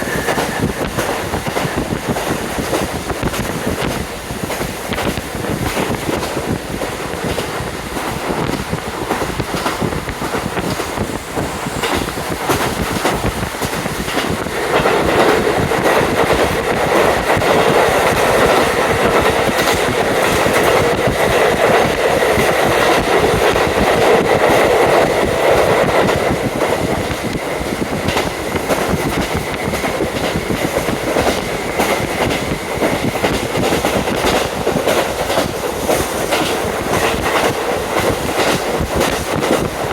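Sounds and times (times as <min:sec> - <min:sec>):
train wheels clacking on rail joints: 0:00.0 - 0:39.9
wind rushing through window: 0:00.0 - 0:39.9
diesel engine drone: 0:10.4 - 0:15.1.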